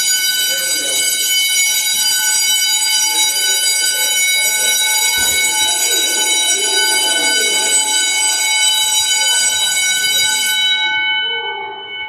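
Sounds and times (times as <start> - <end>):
fire alarm high-pitched tone: 0.0 - 12.0.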